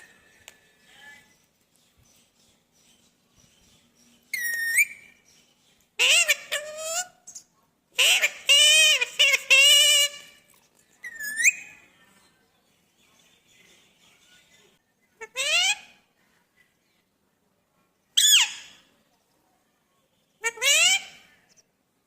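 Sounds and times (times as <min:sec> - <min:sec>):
parrot speech-like mimicry: 0:06.0 - 0:07.2, 0:08.0 - 0:10.2, 0:15.2 - 0:16.0, 0:20.4 - 0:21.4.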